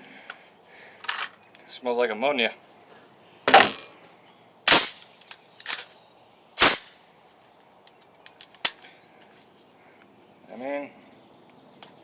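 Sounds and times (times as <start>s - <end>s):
loud rifle shots: 4.7s - 5.0s, 6.6s - 6.9s
fainter sharp cracks: 4.7s - 5.9s, 6.6s - 7.0s.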